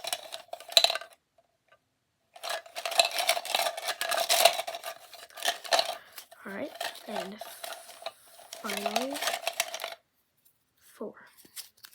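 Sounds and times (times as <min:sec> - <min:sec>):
balls rattling in a container: 0:00.0 - 0:01.2, 0:02.4 - 0:10.0.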